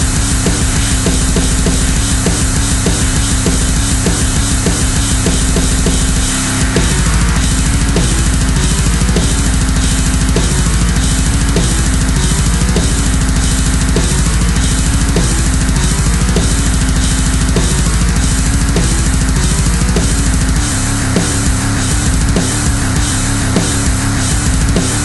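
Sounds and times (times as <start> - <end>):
heavy metal music: 0.0 - 25.0.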